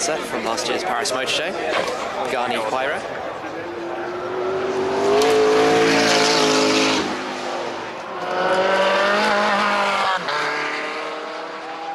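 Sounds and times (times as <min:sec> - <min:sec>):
car engine revving: 0:03.4 - 0:11.9.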